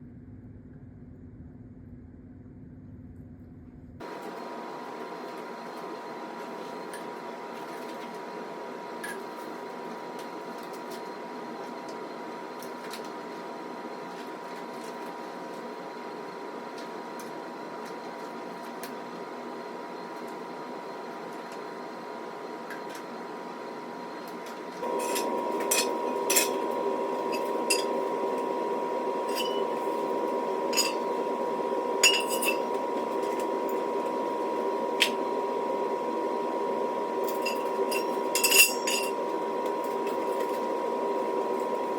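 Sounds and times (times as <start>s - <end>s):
steady hum: 24.8s - 41.9s
metal parts clinking and tapping: 37.3s - 39.2s.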